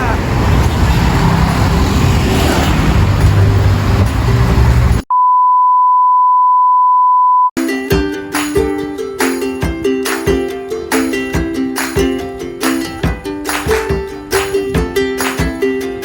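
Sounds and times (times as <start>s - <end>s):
road and engine noise: 0.0s - 5.1s
steady high beep: 5.1s - 7.6s
plucked-string background music: 7.6s - 16.0s.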